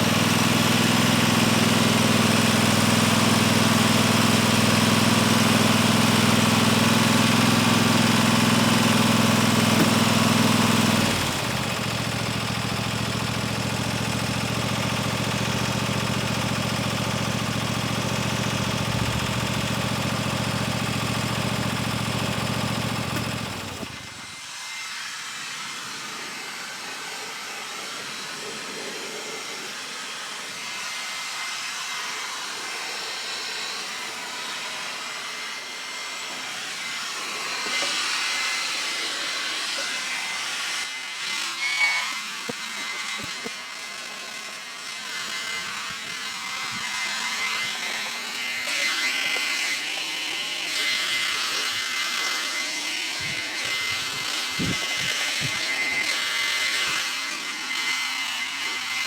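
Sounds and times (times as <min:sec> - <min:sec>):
engine running: 0:00.0 - 0:24.4, 0:53.1 - 0:56.2.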